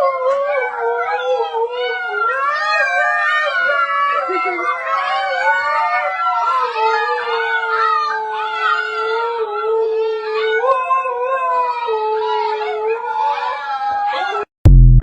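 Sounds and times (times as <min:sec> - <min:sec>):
dog howling: 0:00.0 - 0:14.5.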